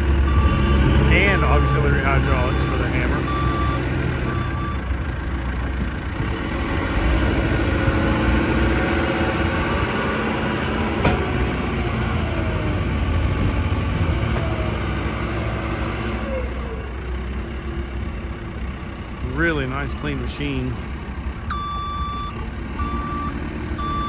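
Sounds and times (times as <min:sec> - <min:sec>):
diesel engine running: 0:00.0 - 0:24.0.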